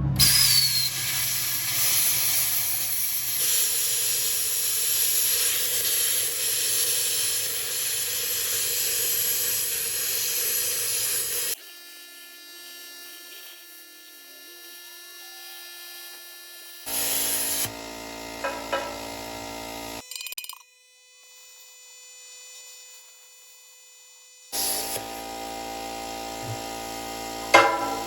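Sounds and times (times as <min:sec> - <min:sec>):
gas jet hissing: 0:00.2 - 0:11.6, 0:16.9 - 0:19.6, 0:26.3 - 0:28.0.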